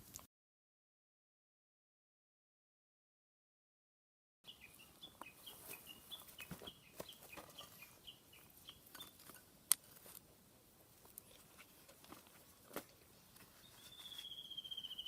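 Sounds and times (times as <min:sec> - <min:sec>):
crackles and pops: 0:08.5 - 0:13.5
bird calling in falling notes: 0:13.6 - 0:15.0.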